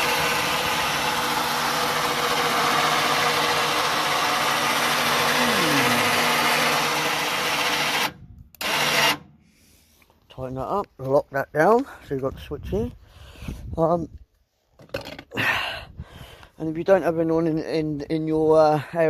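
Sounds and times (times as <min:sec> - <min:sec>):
motor running: 0:00.0 - 0:09.3.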